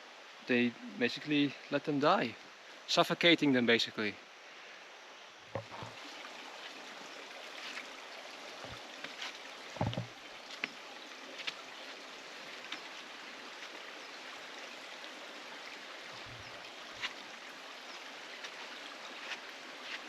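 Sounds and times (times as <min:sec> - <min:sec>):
stream flowing: 0:00.0 - 0:20.0.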